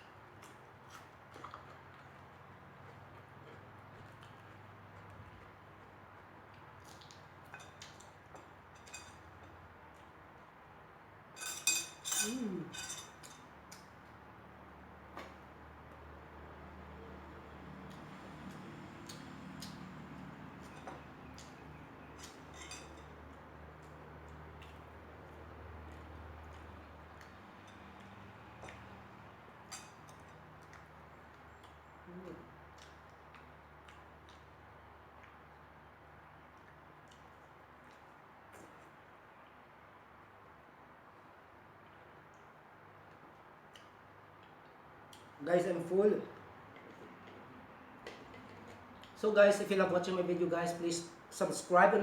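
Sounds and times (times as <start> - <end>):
cutlery clinking against dishes: 7.5 - 9.6, 11.4 - 13.5, 22.2 - 23.2, 29.7 - 30.4
cutlery clicking on a plate: 11.4 - 13.9.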